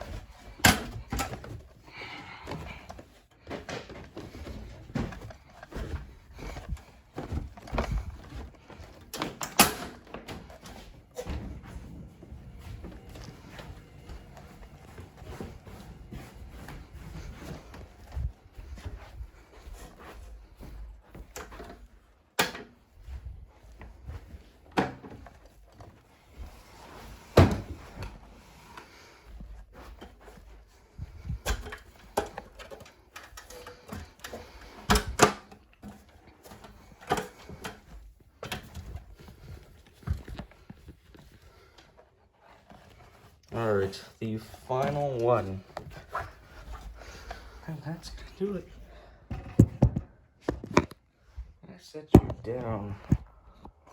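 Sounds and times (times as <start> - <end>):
faint rustling handling noise: 0.0 - 53.9
irregular knocks and clunks: 49.3 - 51.0.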